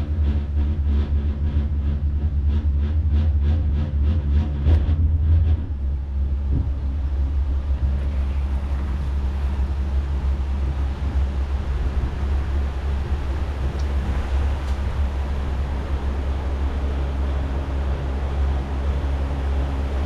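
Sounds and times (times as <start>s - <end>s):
wind rumbling on microphone: 0.0s - 20.0s
bike tyre noise: 6.2s - 18.0s
evenly spaced rattles: 6.7s - 10.6s.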